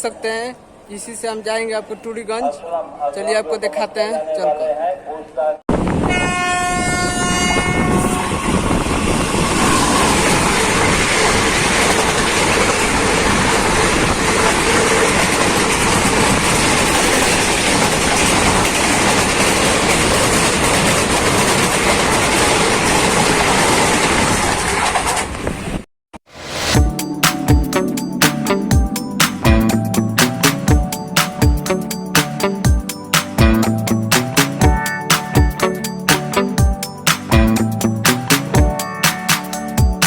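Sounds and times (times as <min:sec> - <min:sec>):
train rumbling on rails: 0:05.7 - 0:25.8
train horn: 0:06.0 - 0:11.2.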